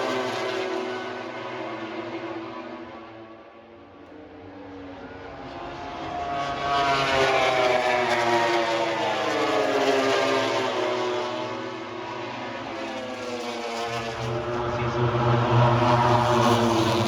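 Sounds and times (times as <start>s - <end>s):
aircraft engine passing overhead: 4.2s - 17.0s.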